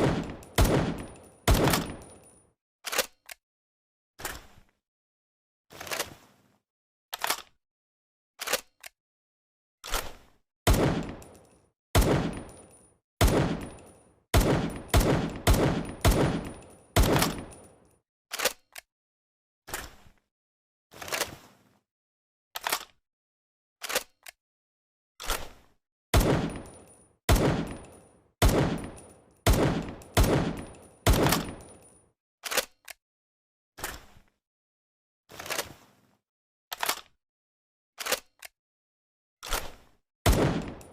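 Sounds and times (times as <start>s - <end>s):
imitation pistol shots: 0.0s - 2.0s, 10.7s - 11.2s, 12.0s - 12.5s, 13.2s - 13.8s, 14.4s - 17.5s, 26.2s - 26.7s, 27.3s - 31.6s, 40.3s - 40.9s.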